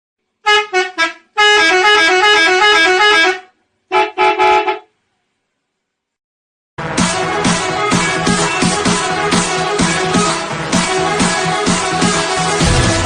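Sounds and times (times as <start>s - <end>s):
musical bus horn: 0.4s - 4.9s.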